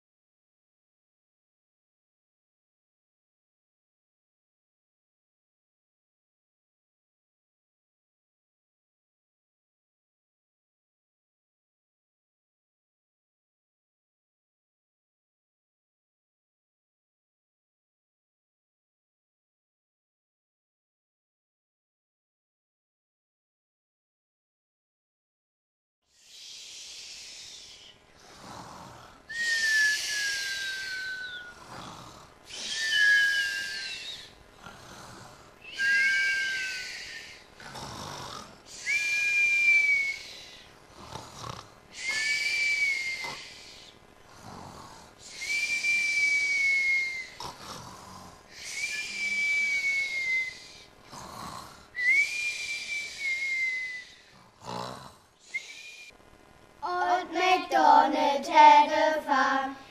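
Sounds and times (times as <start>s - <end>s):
cartoon snoring with whistle: 26.2s - 56.1s, 56.9s - 59.9s.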